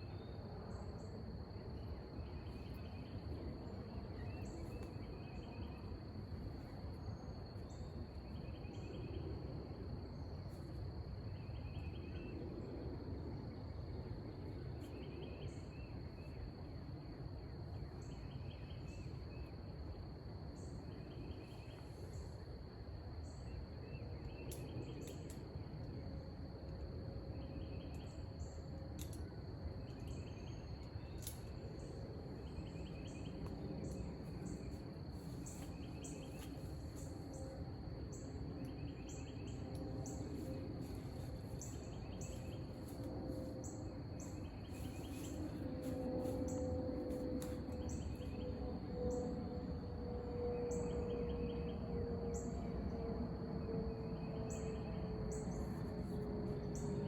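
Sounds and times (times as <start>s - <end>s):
pulsed insect chirp: 15.0s - 57.0s.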